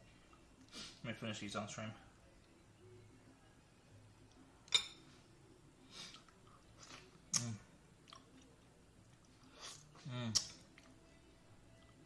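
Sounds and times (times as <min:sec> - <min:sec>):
person chewing food: 0:06.0 - 0:11.0.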